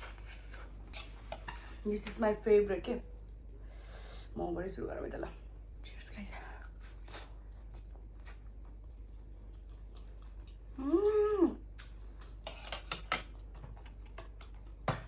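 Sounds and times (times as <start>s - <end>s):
person chewing: 6.6s - 10.9s, 11.6s - 12.6s
person humming mmm: 10.8s - 11.7s.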